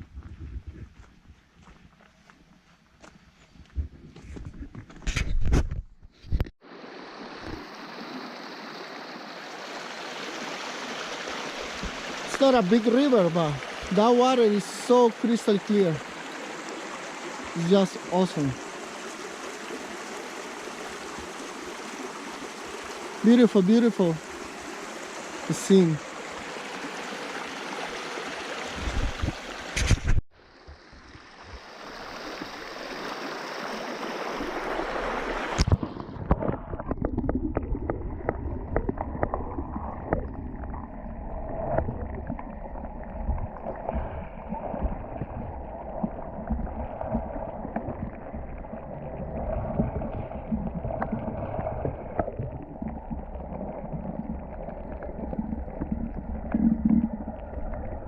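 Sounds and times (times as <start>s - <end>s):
river rushing over stones: 6.7s - 29.8s, 31.4s - 35.7s.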